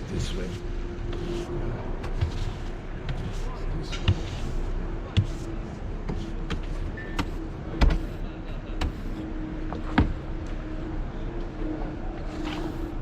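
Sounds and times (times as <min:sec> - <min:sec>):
steady hum: 0:00.0 - 0:13.0
brush sweeping snow off vehicle: 0:00.2 - 0:07.4.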